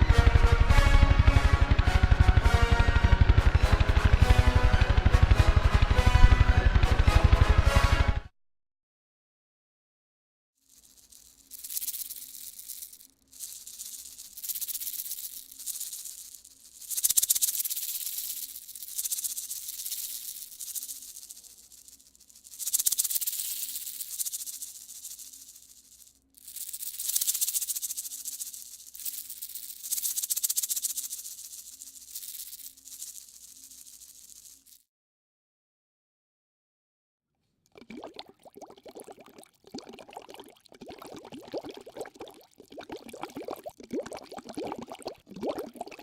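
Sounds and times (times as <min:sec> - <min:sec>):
beads rattling: 0:10.6 - 0:34.8, 0:37.8 - 0:46.0.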